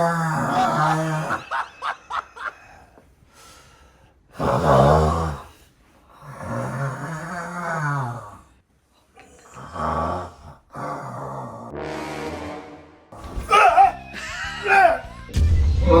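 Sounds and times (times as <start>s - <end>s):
man snoring heavily: 0.0s - 1.4s, 4.4s - 5.5s, 6.2s - 8.4s, 9.5s - 11.7s.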